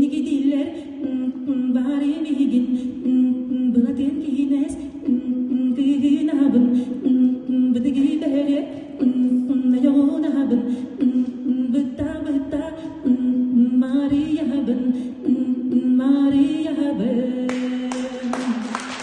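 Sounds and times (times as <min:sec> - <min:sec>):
person singing a cappella: 0:00.0 - 0:19.0
applause: 0:17.5 - 0:19.0.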